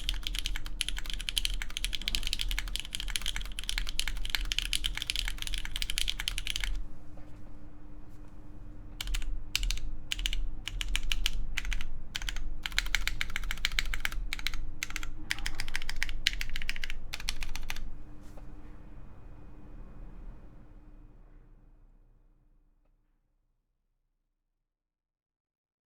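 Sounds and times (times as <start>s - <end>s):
typing on mechanical keyboard: 0.0s - 6.8s, 9.0s - 17.9s.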